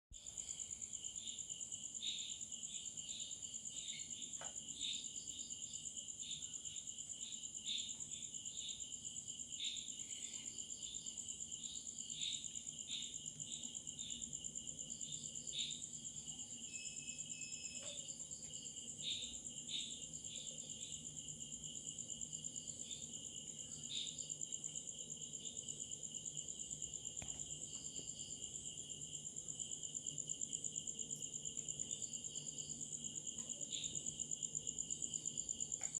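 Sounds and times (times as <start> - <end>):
high insect trill: 0.2 - 35.9
pulsing cricket chirps: 0.2 - 35.9.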